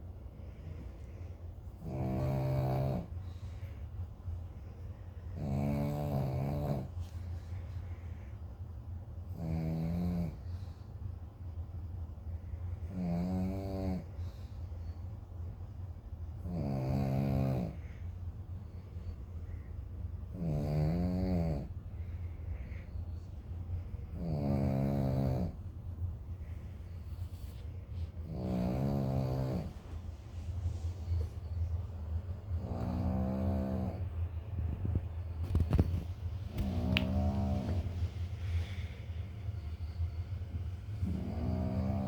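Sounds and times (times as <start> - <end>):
steady low hum: 0.0 - 42.0
dog snoring: 1.8 - 3.4, 5.3 - 7.1, 9.3 - 10.8, 12.8 - 14.5, 16.4 - 18.0, 20.3 - 21.8, 24.0 - 25.6, 28.2 - 30.0, 32.5 - 34.2, 34.8 - 38.9, 40.9 - 42.0.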